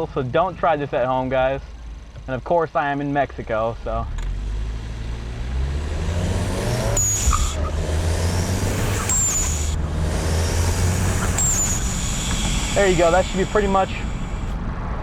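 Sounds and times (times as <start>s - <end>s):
turbocharged car engine accelerating: 3.2s - 15.0s
blow-off valve hissing: 8.1s - 14.6s.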